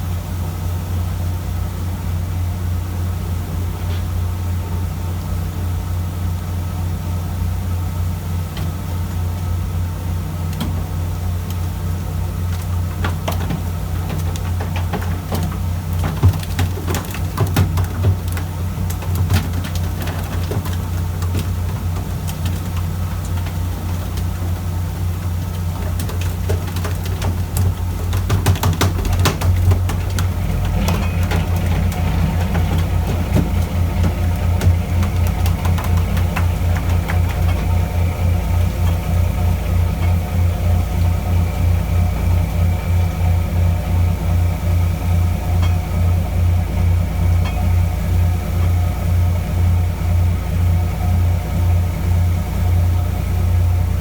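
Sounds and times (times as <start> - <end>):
boat engine droning: 4.4 - 54.0
sharp clicks and knocks: 12.5 - 40.3.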